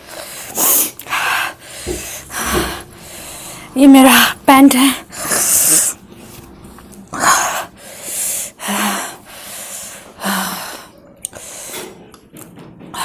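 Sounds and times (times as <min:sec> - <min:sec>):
person breathing hard through mouth: 0:00.0 - 0:03.8, 0:05.1 - 0:06.0, 0:07.1 - 0:12.0.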